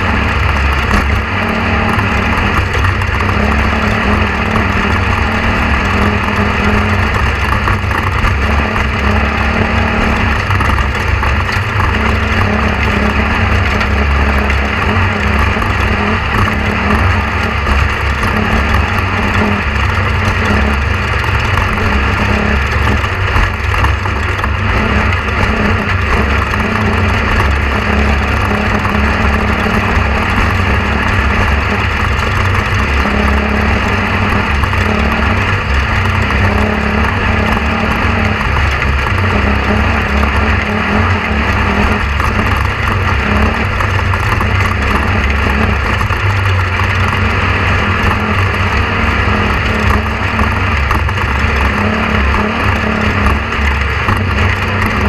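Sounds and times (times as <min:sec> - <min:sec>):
low mechanical drone: 0:00.0 - 0:55.0.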